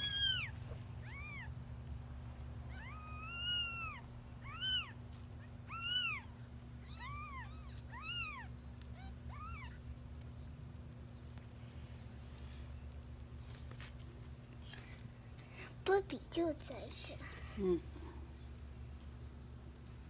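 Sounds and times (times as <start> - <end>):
kittens mewing: 0.0 - 1.6, 2.6 - 9.8.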